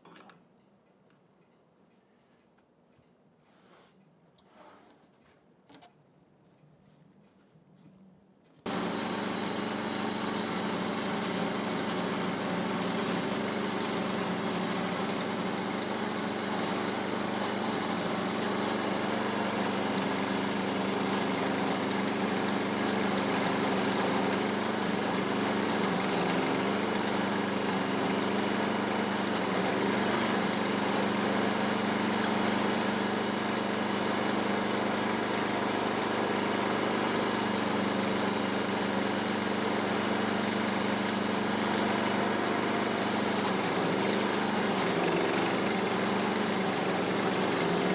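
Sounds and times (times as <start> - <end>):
small gasoline engine running: 8.7 - 47.9.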